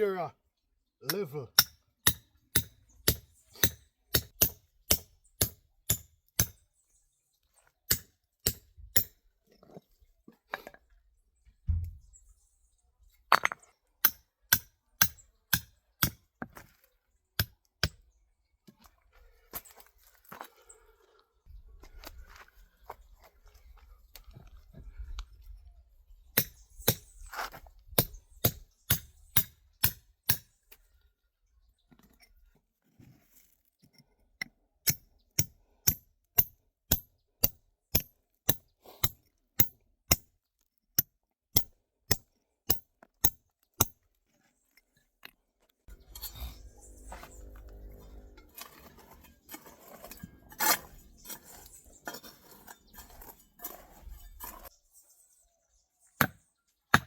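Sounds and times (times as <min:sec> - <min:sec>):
metal tool chipping stone: 0:01.1 - 0:06.7, 0:07.9 - 0:09.2, 0:13.3 - 0:16.6, 0:17.4 - 0:18.0, 0:26.4 - 0:30.5, 0:34.4 - 0:40.4, 0:41.0 - 0:44.0, 0:45.9 - 0:54.7, 0:56.2 - 0:57.0
scraping and rustling: 0:45.9 - 0:54.8.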